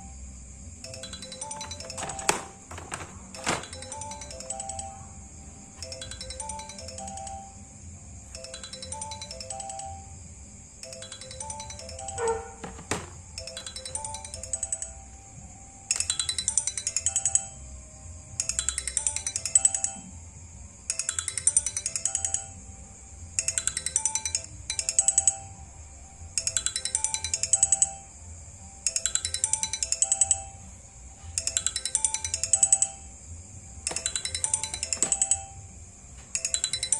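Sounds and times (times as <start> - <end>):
soft ringtone melody: 0.8 - 10.2, 10.8 - 20.2, 20.9 - 22.7, 23.4 - 30.7, 31.4 - 33.2, 33.9 - 35.7, 36.3 - 36.9
electronic trilling ringtone: 5.8 - 7.6.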